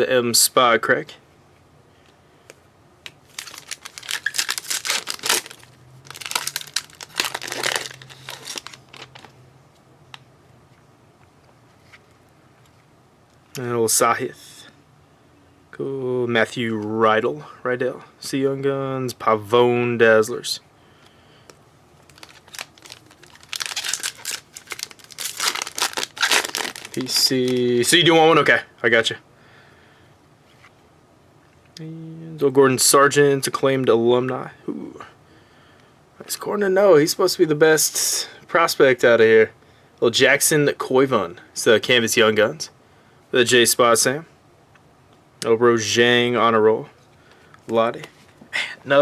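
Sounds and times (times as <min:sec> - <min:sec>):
wrapper tearing and crinkling: 0:03.2 - 0:09.3, 0:22.0 - 0:27.9.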